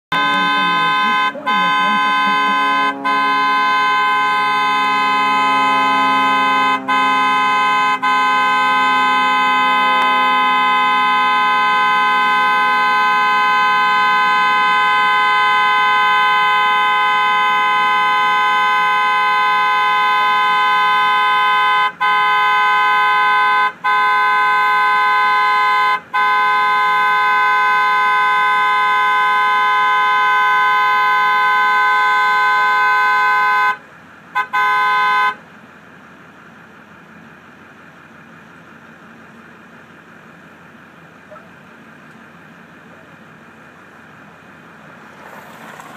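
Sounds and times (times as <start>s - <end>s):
car horn sounding: 0.0s - 35.4s.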